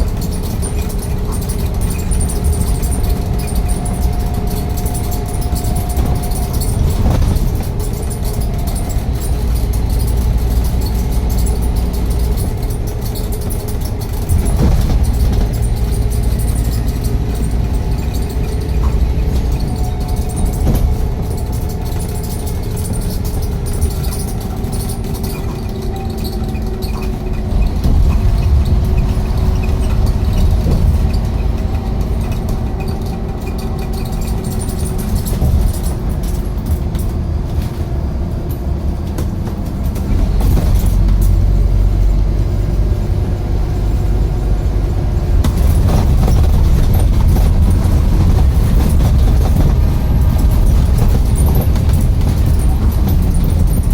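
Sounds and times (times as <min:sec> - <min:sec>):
bus engine rumbling: 0:00.0 - 0:53.9.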